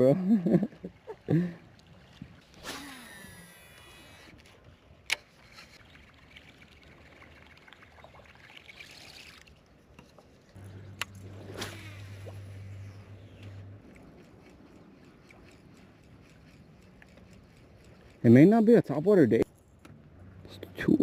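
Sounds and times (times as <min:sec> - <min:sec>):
faint water noise: 0:00.0 - 0:21.0
low steady hum: 0:09.3 - 0:21.0.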